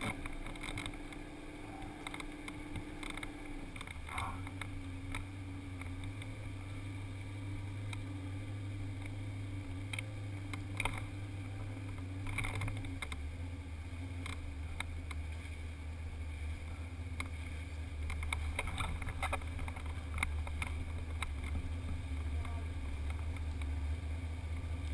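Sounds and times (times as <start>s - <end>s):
faint clicks: 0.0s - 6.4s, 7.8s - 8.1s, 9.8s - 13.3s, 14.2s - 15.6s, 17.2s - 23.9s
boat engine idling: 0.0s - 24.9s.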